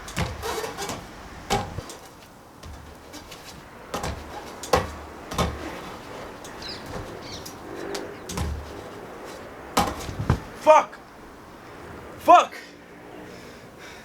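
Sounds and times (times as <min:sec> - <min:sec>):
knocks and thuds on pull-up bar: 0:00.0 - 0:10.8
faint bird chirps: 0:06.6 - 0:07.5.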